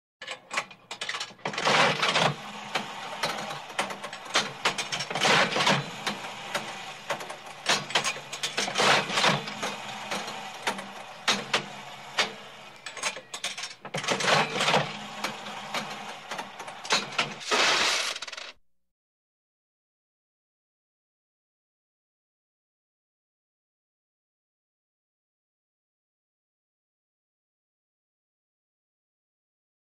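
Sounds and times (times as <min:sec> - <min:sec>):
slot machine clattering: 0:00.2 - 0:18.5
slot machine whirring and clicking: 0:00.2 - 0:18.5.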